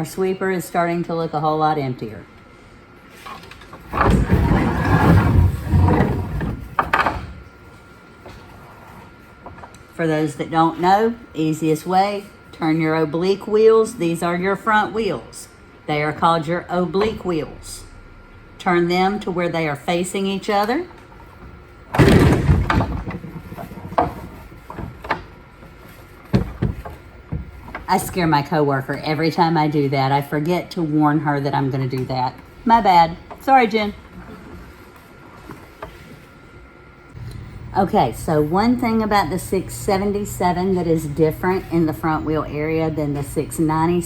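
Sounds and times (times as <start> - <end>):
sweeper parts knocking and clunking: 3.7 - 7.4, 26.3 - 28.2
sweeper scraping on floor: 4.2 - 6.7.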